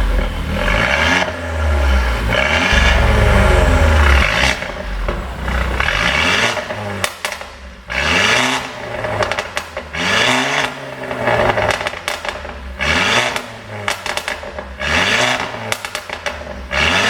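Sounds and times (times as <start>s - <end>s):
car engine revving: 0.0s - 17.0s
exhaust pops and crackles: 11.2s - 16.7s.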